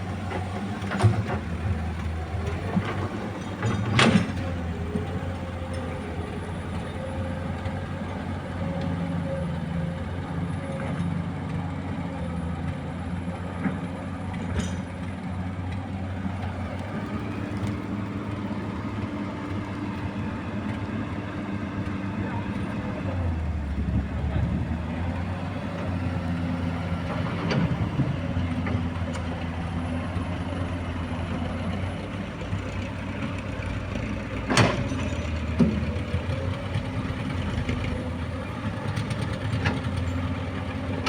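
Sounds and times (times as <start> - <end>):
excavator diesel engine: 0.0 - 41.0.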